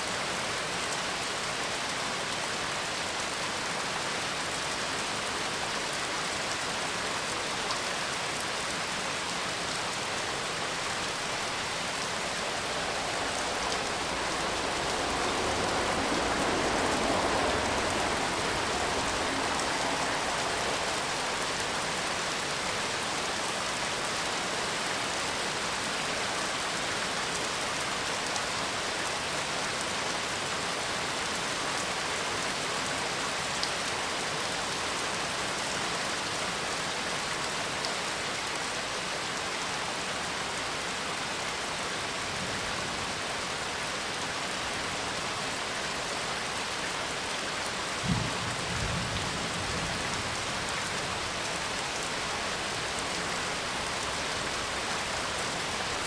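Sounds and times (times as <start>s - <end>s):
steady rain: 0.0s - 56.0s
low thunder rumble: 11.6s - 21.8s, 48.0s - 51.3s.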